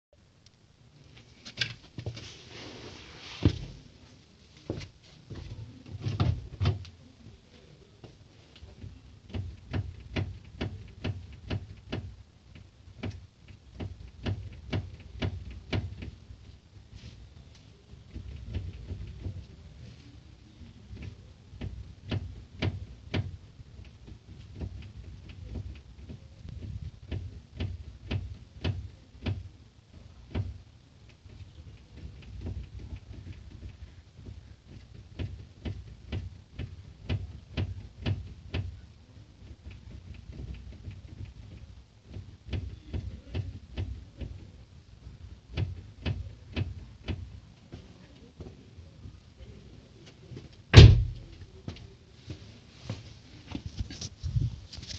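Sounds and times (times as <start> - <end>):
steering knocking: 31.3 - 38.8.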